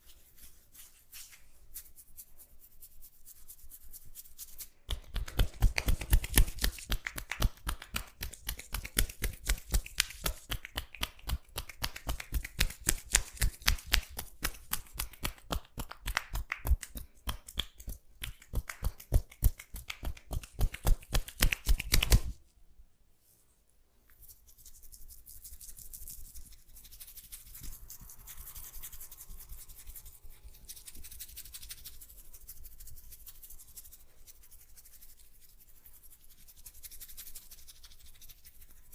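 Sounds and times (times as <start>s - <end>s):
hands rubbing oiled hair: 0.0s - 22.4s, 23.2s - 38.9s
hands tapping on head: 4.9s - 22.4s.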